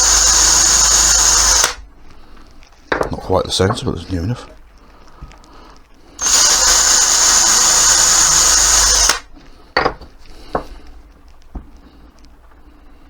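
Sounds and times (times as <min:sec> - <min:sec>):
electric drill boring wood: 0:00.0 - 0:01.8, 0:06.2 - 0:09.3.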